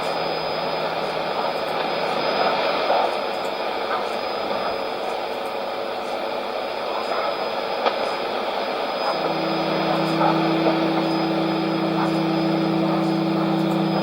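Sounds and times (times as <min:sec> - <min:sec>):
radio static hiss: 0:00.0 - 0:14.0
faint high whistle: 0:09.1 - 0:14.0.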